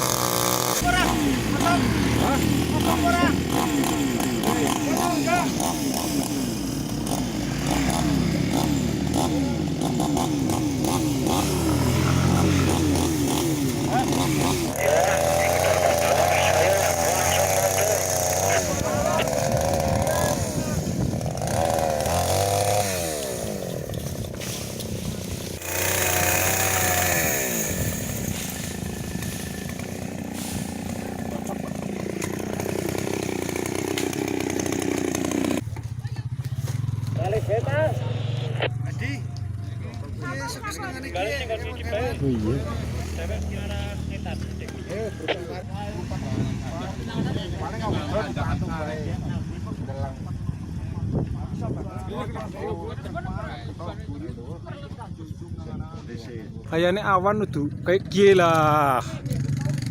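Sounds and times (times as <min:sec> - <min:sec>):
small engine running: 0:00.0 - 0:38.7.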